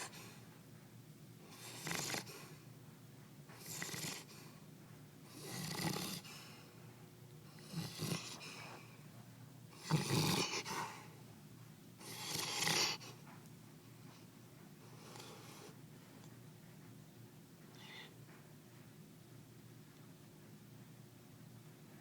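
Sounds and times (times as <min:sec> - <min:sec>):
dog snoring: 0:00.0 - 0:00.4, 0:01.4 - 0:02.7, 0:03.5 - 0:04.6, 0:05.2 - 0:06.7, 0:07.5 - 0:09.0, 0:09.7 - 0:11.2, 0:12.0 - 0:13.3, 0:14.9 - 0:15.8.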